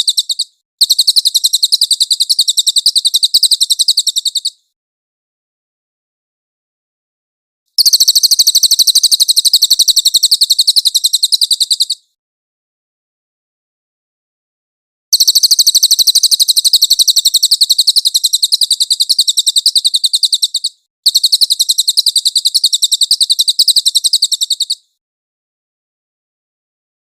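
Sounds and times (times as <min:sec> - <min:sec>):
songbird trilling: 0:00.0 - 0:04.6, 0:07.8 - 0:12.1, 0:15.2 - 0:24.9.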